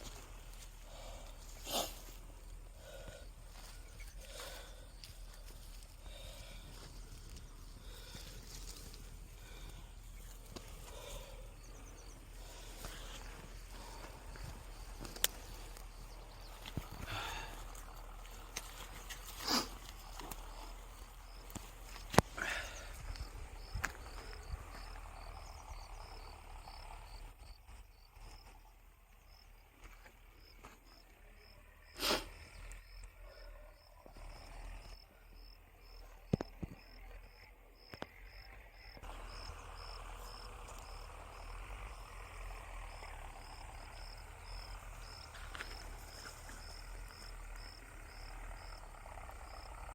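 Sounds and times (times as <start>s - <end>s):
low outdoor rumble: 0.0s - 49.9s.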